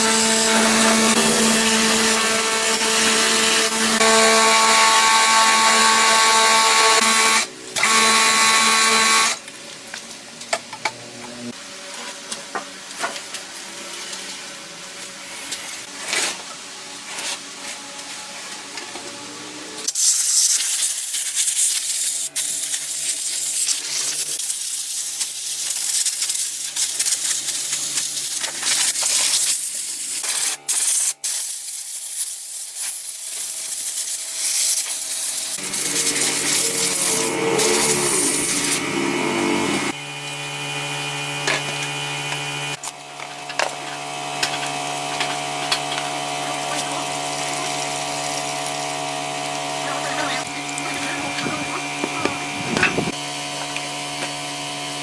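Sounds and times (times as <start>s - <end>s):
power tool motor whining: 0.0s - 9.4s, 35.5s - 55.0s
hand tools scraping and tapping: 50.8s - 54.4s.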